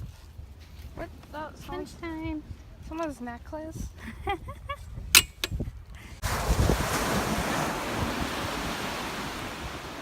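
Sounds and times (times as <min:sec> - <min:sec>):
wind on microphone: 0:03.6 - 0:10.0
ocean surf: 0:06.2 - 0:10.0.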